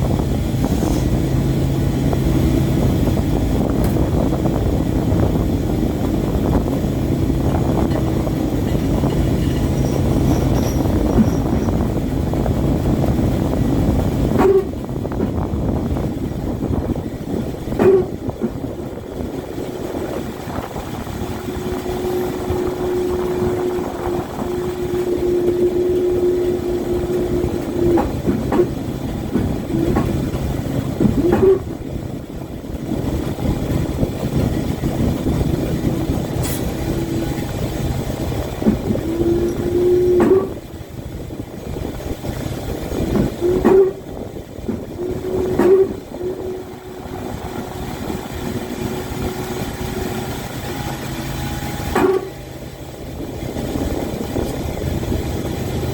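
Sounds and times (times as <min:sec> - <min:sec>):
boat engine rumble: 0:00.0 - 0:55.9
held tone: 0:21.2 - 0:28.8
sharp knocks: 0:27.6 - 0:31.7, 0:51.9 - 0:52.4.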